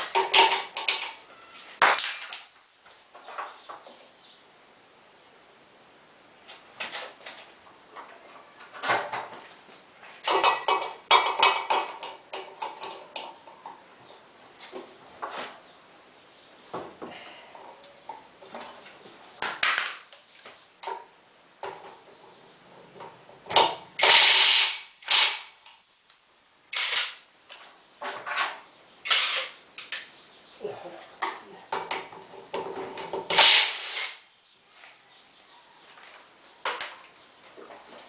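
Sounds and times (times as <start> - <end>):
tools and metal parts clinking: 1.8 - 2.6, 10.3 - 13.4, 19.4 - 20.2.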